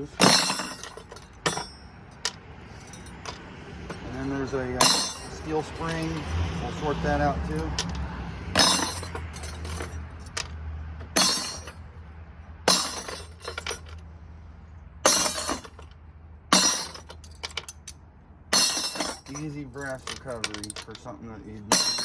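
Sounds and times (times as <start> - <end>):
metal parts clattering into buckets: 0.0 - 8.0, 8.6 - 11.9, 12.7 - 14.0, 15.0 - 15.9, 16.5 - 17.9, 18.5 - 22.0
small metallic clinks: 0.2 - 6.4, 7.5 - 10.5, 12.7 - 14.0, 16.5 - 22.0.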